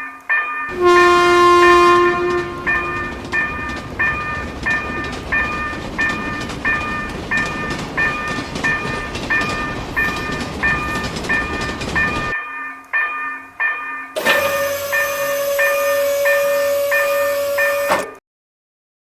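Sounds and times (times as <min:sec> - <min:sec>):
level-crossing bell ringing: 0:00.4 - 0:18.0
train rumbling past: 0:00.7 - 0:12.4, 0:14.4 - 0:17.9.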